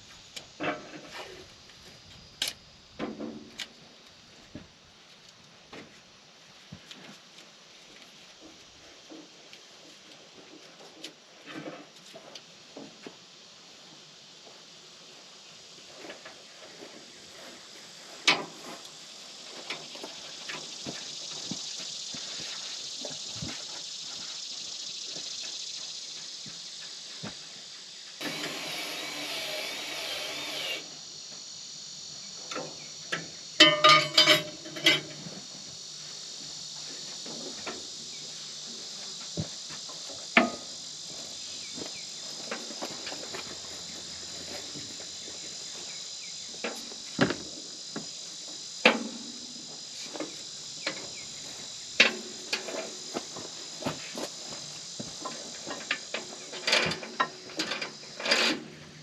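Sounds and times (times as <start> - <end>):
insects chirring: 0.0 - 59.0
metal knocks and clanks: 33.6 - 35.1.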